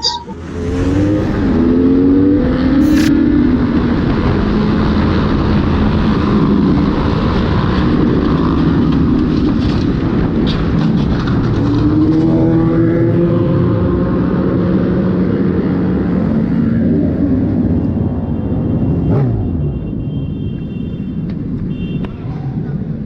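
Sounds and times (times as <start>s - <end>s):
motorcycle engine revving: 0.0s - 9.4s
wind noise: 0.0s - 12.8s.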